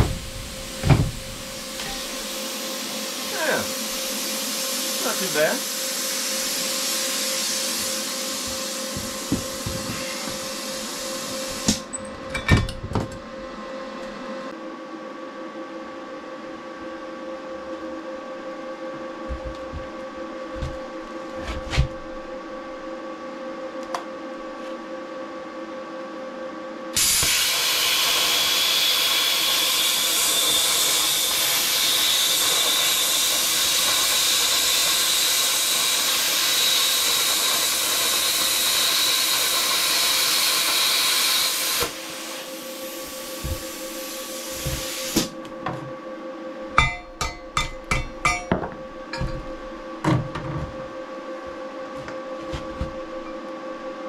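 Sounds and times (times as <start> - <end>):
plasma cutter hissing: 0.0 - 11.9, 27.0 - 45.4
high whine: 0.0 - 23.0, 41.9 - 54.0
steady hum: 0.0 - 27.0, 41.8 - 54.0.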